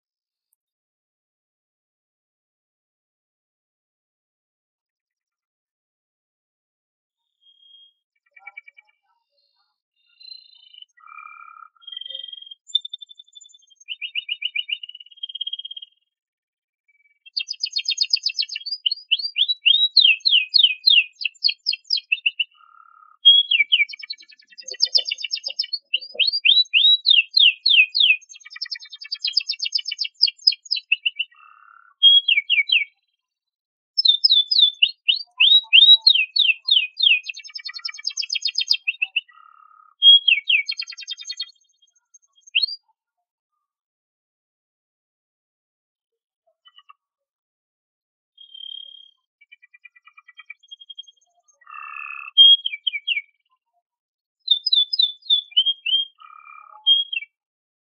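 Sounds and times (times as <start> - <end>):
canary singing trills: 7.4 - 16.0, 16.9 - 33.0, 34.0 - 42.9, 48.4 - 53.4, 54.4 - 57.4.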